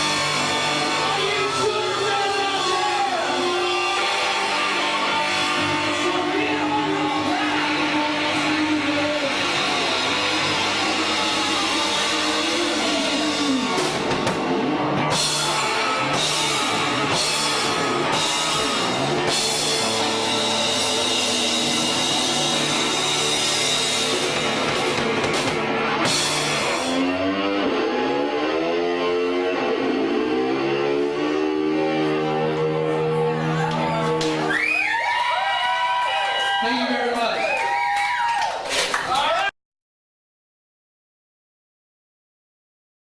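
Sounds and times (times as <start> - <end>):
hard rock band playing: 0.0 - 35.5
guitar bending notes: 3.2 - 34.7.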